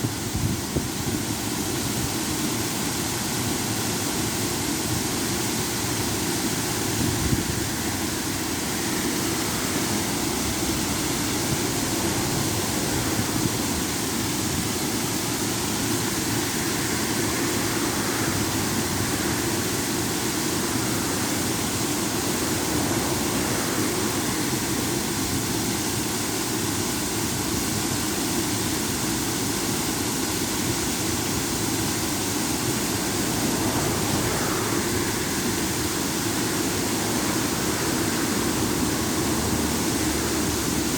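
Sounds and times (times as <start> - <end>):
waterfall pouring and splashing: 0.0 - 40.9.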